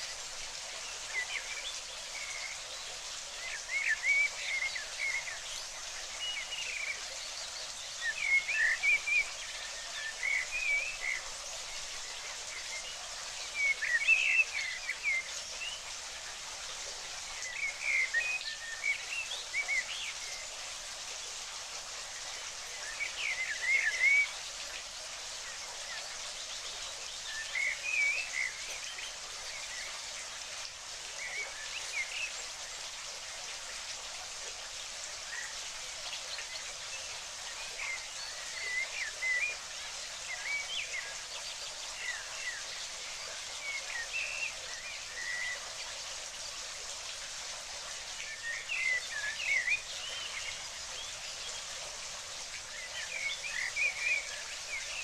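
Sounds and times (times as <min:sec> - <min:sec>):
running water hiss: 0:00.0 - 0:55.0.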